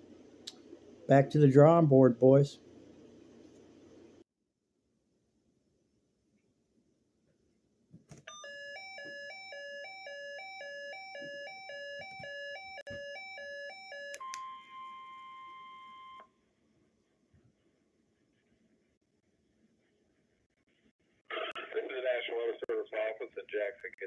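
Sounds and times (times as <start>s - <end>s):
steady alarm tone: 8.3s - 16.2s
two-note electronic alarm beeping: 8.3s - 16.3s.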